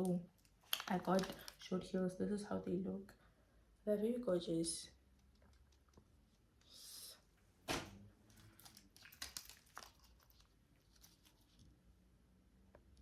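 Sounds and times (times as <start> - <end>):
paper packaging rustling: 0.6 - 1.7, 7.7 - 11.7.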